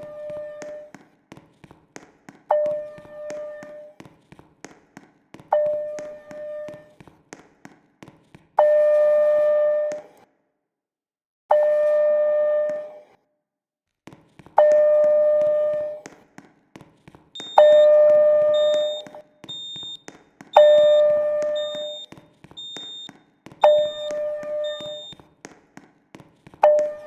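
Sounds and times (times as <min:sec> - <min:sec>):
fire alarm chime tone: 0:17.4 - 0:20.0, 0:20.6 - 0:25.2
short high-pitched beep: 0:17.4 - 0:20.0, 0:20.6 - 0:25.2.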